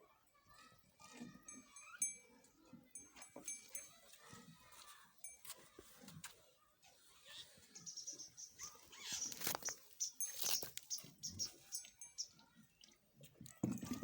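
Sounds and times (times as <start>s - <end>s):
short high chirping calls: 7.3s - 12.4s.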